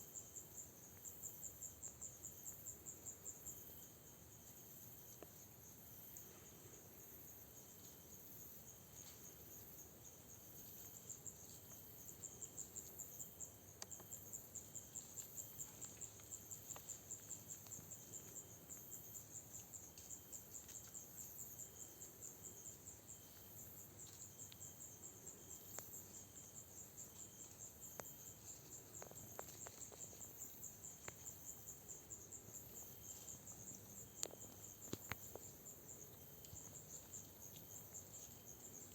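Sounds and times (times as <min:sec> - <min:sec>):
crickets chirping: 0:00.0 - 0:38.9.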